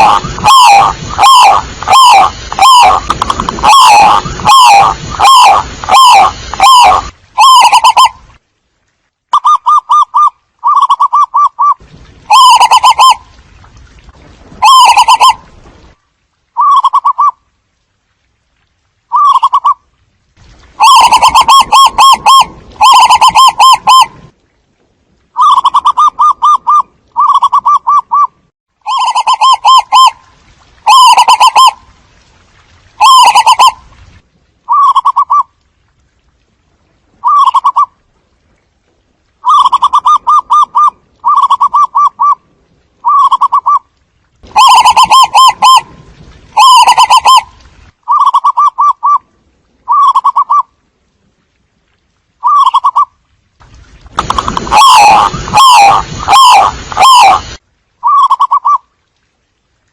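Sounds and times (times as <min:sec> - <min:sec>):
doves cooing: 0:54.2 - 0:57.4.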